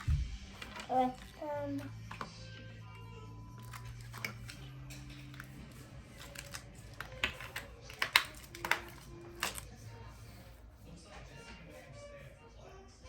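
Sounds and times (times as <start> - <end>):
plastic parts clicking: 6.2 - 9.7.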